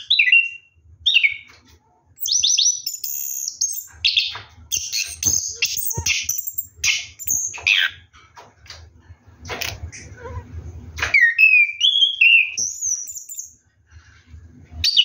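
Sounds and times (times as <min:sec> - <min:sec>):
bird singing chirps and whistles: 0:00.0 - 0:01.5, 0:02.2 - 0:08.0, 0:11.1 - 0:13.6.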